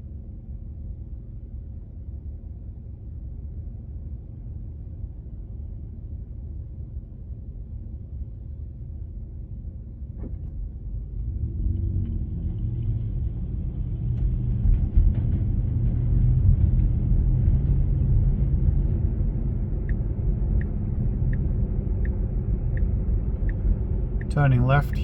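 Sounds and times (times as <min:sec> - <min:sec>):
road and tyre rumble: 0:00.0 - 0:25.0
turn signal ticking: 0:19.8 - 0:25.0.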